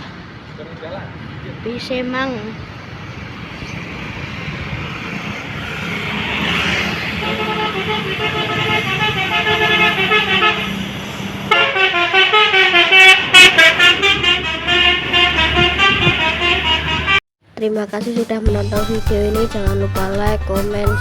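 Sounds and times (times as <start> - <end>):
bus rumble: 0.0 - 17.2
bus multi-tone horn tune: 7.2 - 17.2.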